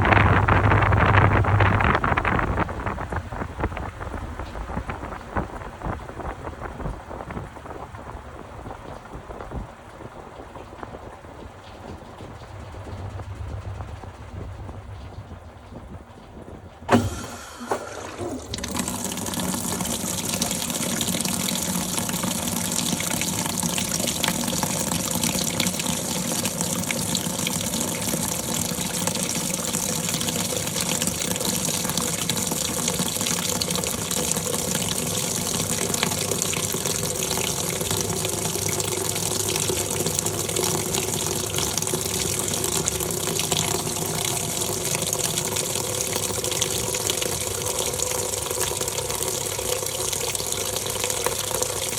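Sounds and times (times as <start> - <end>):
washing machine click: 16.9 - 21.9
water gushing into tub: 16.9 - 51.9.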